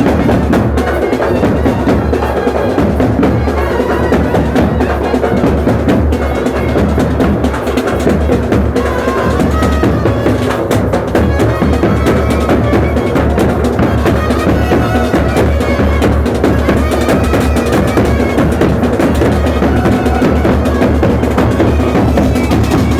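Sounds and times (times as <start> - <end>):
fast dense drumming: 0.0 - 22.9
held melody notes: 0.0 - 22.9.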